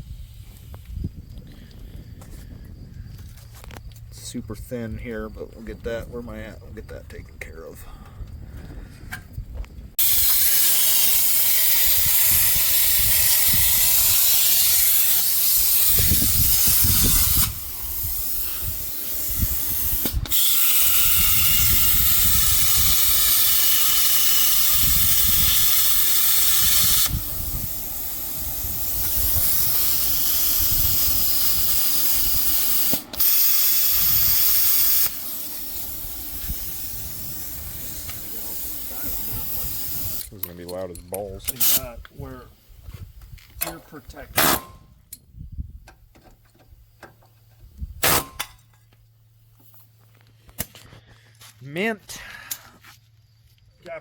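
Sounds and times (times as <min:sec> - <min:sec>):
compressed air hissing: 0:00.0 - 0:03.1, 0:09.9 - 0:40.4, 0:41.3 - 0:44.8.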